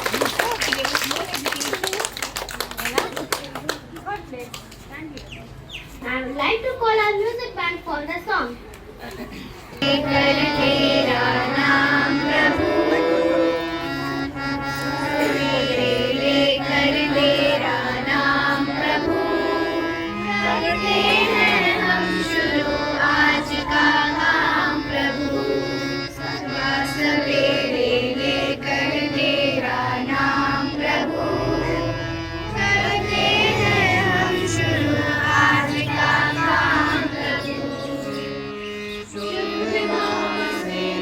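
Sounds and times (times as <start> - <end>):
school band playing: 9.8 - 41.0.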